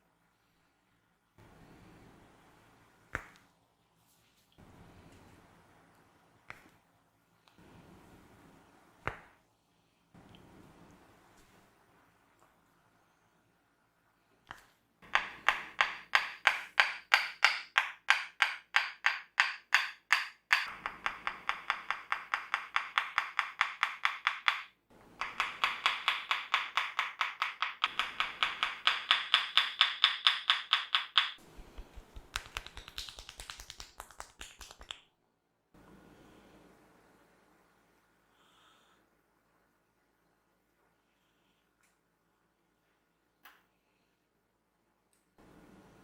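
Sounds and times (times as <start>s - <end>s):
hands snapping and tapping on head: 3.1s - 3.5s, 6.5s - 6.8s, 9.0s - 9.4s, 14.5s - 35.1s.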